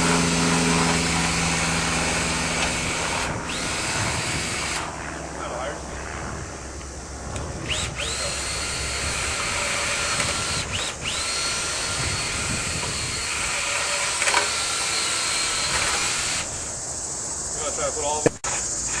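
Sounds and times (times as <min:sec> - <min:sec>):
power drill whining: 0:00.0 - 0:04.9, 0:07.6 - 0:16.7.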